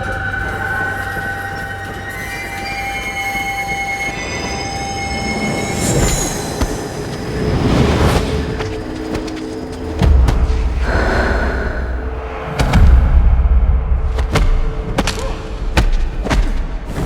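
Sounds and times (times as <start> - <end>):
train wheels squealing: 0.0 - 9.7
train rumbling: 0.0 - 14.9.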